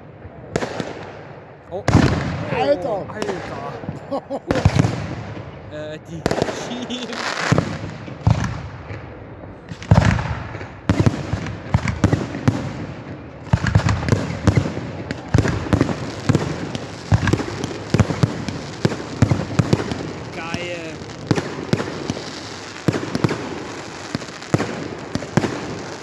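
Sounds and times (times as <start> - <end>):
fireworks crackling: 1.7 - 26.0
firework shells bursting: 1.8 - 9.1.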